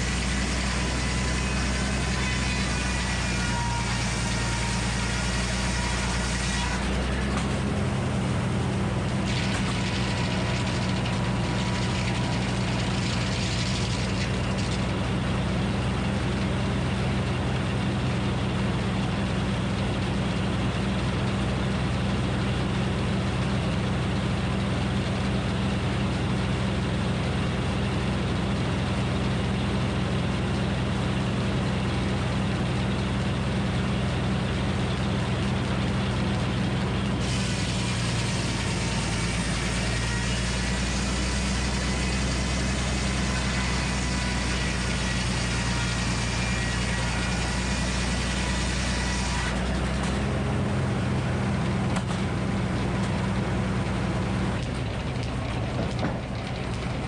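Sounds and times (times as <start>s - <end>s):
engine powering a circular sawmill: 0.0s - 57.0s.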